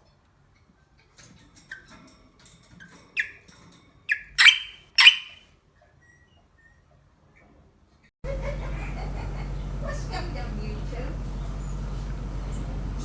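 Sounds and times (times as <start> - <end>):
small animal squeaking: 3.2 - 3.5, 4.1 - 5.4
harsh animal squawks: 4.1 - 5.4.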